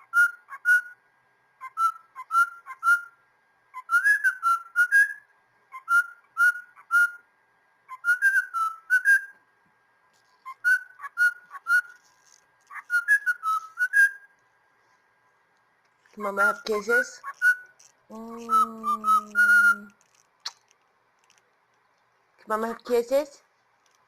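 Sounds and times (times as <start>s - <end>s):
squeaky kissing sounds: 16.4s - 21.4s.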